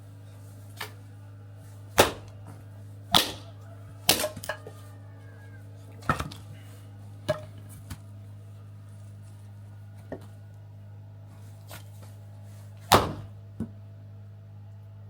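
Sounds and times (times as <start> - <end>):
steady low hum: 0.0 - 15.0
axe chopping wood: 2.0 - 2.4, 3.1 - 3.4, 4.0 - 4.7, 12.9 - 13.7.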